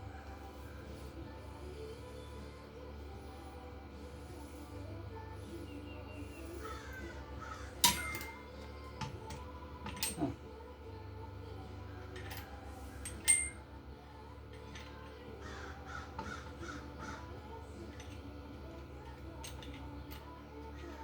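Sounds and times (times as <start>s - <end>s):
steady low hum: 0.0s - 21.0s
metallic clinks from hand tools: 7.8s - 10.4s, 12.1s - 13.7s.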